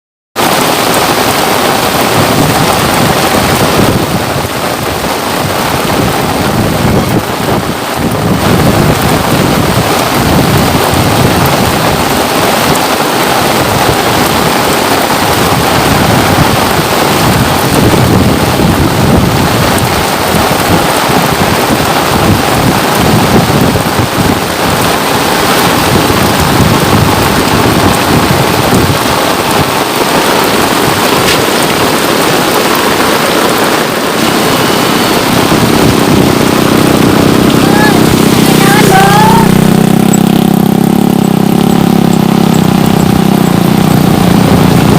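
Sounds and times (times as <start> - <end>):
steady rain falling: 0.4 - 44.9.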